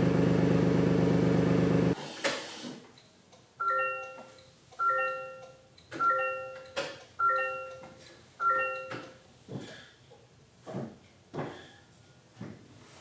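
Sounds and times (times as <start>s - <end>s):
car warning chime: 3.6s - 9.2s.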